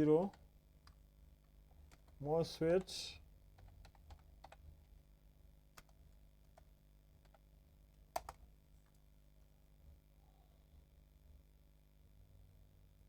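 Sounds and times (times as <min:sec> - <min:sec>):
keyboard clicks: 0:03.6 - 0:04.6, 0:05.8 - 0:07.4, 0:08.1 - 0:08.4.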